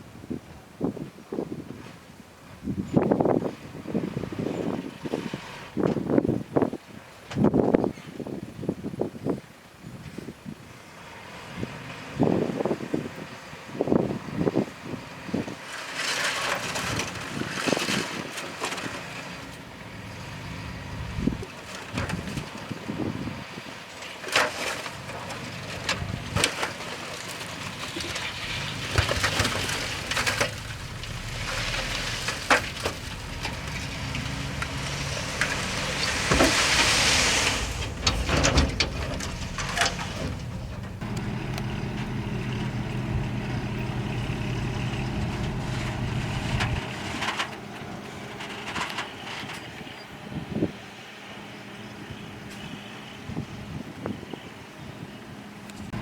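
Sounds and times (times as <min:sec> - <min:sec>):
diesel earthmoving machinery: 0:10.7 - 0:56.0
metal clanks and knocks: 0:24.4 - 0:47.6
hiss burst: 0:30.0 - 0:40.8.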